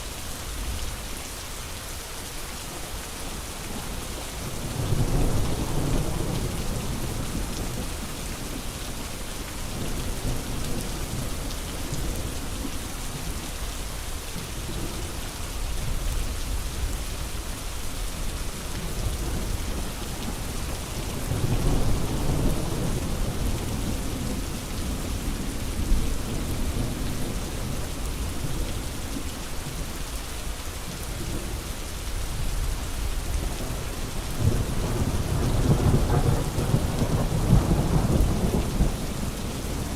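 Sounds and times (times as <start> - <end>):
steady rain hiss: 0.0 - 39.9
low rolls of thunder: 18.8 - 28.6, 34.4 - 39.9.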